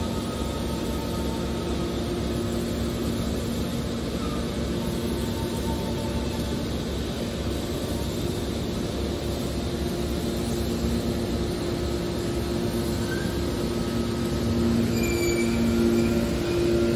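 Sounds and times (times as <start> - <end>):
hydraulic baler droning: 0.0 - 16.9.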